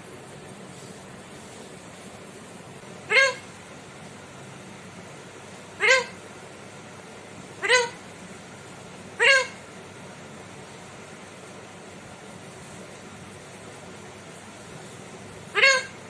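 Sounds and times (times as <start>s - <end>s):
parrot imitating cat meow: 3.1s - 3.4s, 5.8s - 6.2s, 7.6s - 8.0s, 9.2s - 9.6s, 15.5s - 16.0s.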